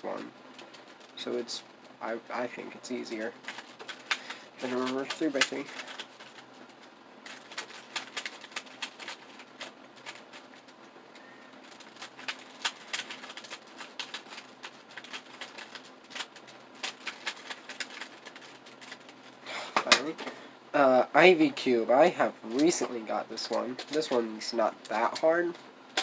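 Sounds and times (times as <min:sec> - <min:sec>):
plastic puzzle cube clicking: 0:07.2 - 0:10.2, 0:11.6 - 0:19.1.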